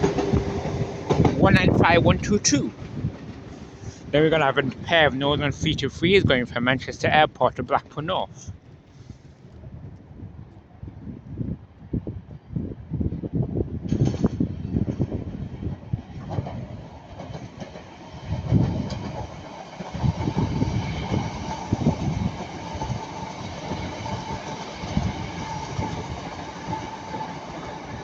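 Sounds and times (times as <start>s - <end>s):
train wheels clattering over rail joints: 0.0s - 1.8s, 13.8s - 15.3s, 16.1s - 27.9s.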